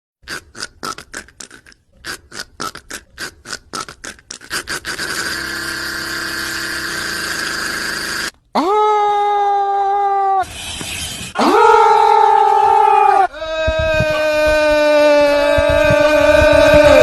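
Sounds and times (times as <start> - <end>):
man beatboxing: 2.1 - 5.3, 13.6 - 17.0.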